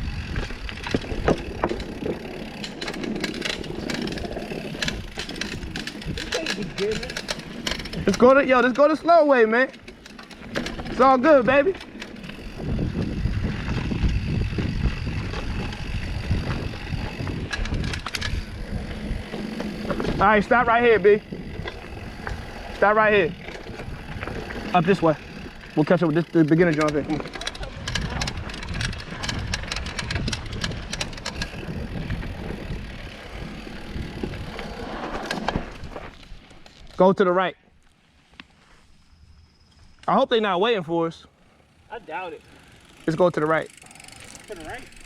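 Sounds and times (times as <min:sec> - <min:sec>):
bike tyres rumbling on dirt: 0:00.0 - 0:45.0
wind on microphone: 0:12.3 - 0:25.7, 0:27.5 - 0:36.1.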